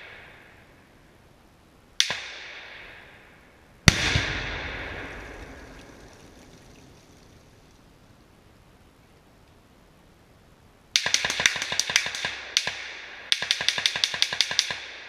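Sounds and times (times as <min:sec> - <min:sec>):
gunshot echo: 0:02.0 - 0:06.4
rifle shots: 0:03.8 - 0:06.4, 0:11.0 - 0:15.0
deep explosion boom: 0:03.9 - 0:07.2.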